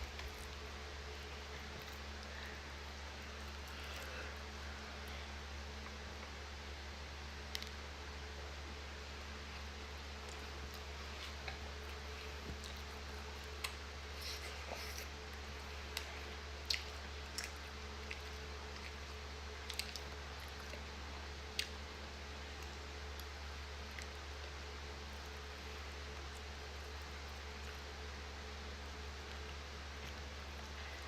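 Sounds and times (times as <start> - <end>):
person chewing food: 0.0 - 5.2, 10.1 - 21.8.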